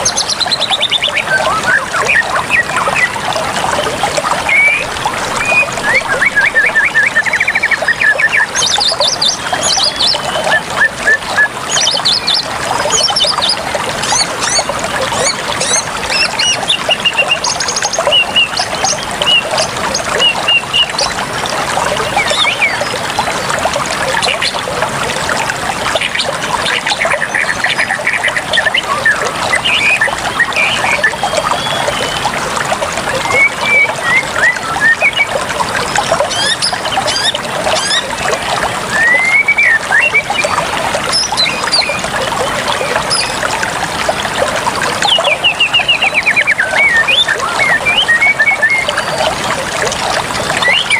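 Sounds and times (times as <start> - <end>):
birds chirping and trilling: 0.0 - 21.2, 21.9 - 23.3, 33.3 - 43.5, 50.6 - 50.9
water trickling and splashing: 0.0 - 50.9.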